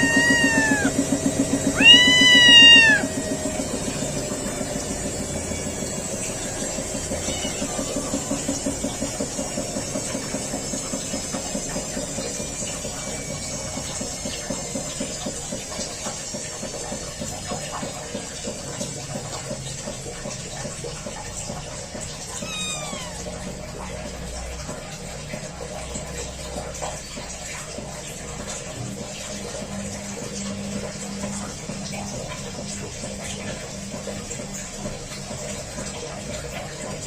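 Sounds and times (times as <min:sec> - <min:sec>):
kitten meowing: 0:00.0 - 0:01.0, 0:01.6 - 0:03.2, 0:07.2 - 0:07.8, 0:22.4 - 0:23.6
kittens chirping: 0:00.0 - 0:01.0, 0:01.6 - 0:03.2, 0:22.4 - 0:23.4.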